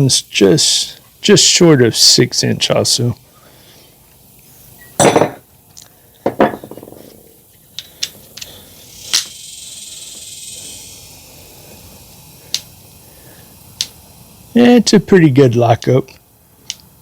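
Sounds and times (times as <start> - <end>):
soft scraping hiss: 0.0 - 17.0
metal tools clattering: 5.0 - 5.4.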